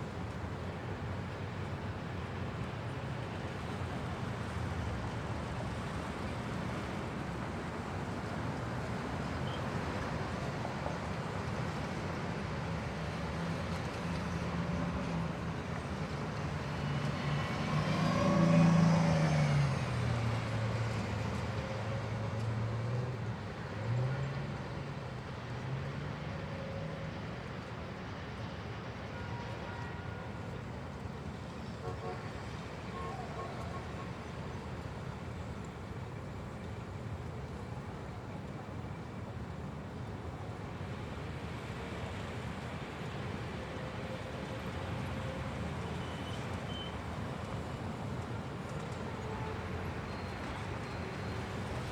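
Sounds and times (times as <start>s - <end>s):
steady traffic noise: 0.0s - 51.9s
vehicle passing close by: 16.8s - 20.5s.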